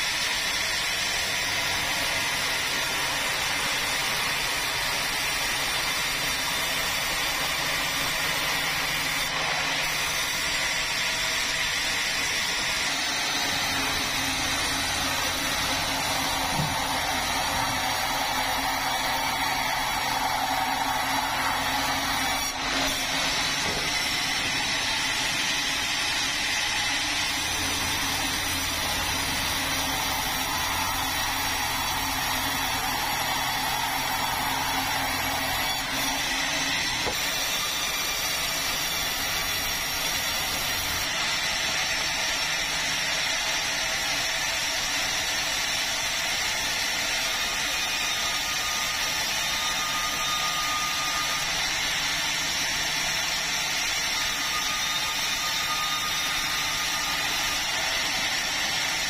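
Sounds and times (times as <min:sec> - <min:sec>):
power saw cutting log: 0:00.0 - 0:59.0.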